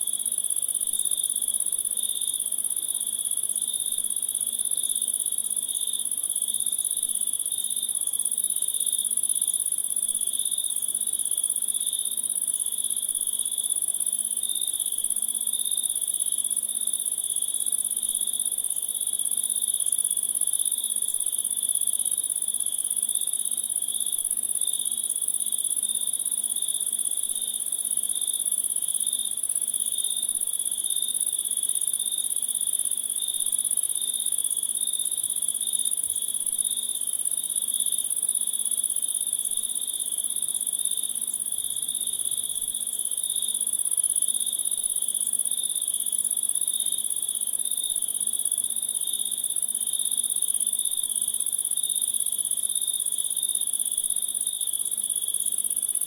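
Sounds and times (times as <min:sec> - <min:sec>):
crickets chirping: 0:18.2 - 0:56.0.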